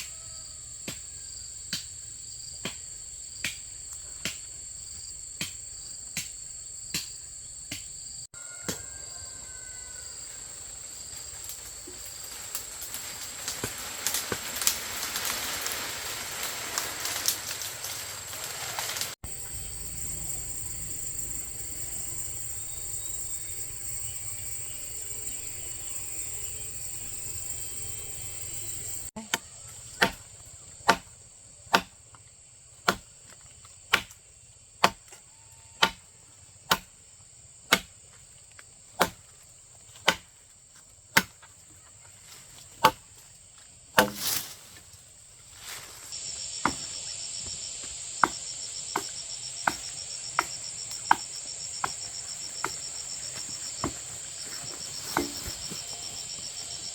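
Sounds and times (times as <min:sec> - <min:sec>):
crickets chirring: 0:00.0 - 0:56.9.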